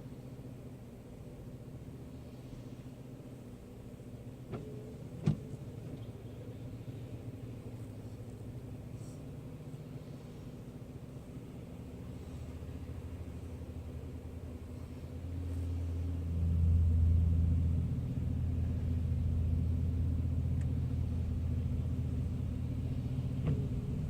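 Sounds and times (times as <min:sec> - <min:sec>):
vehicle engine rumbling: 0:00.0 - 0:24.0.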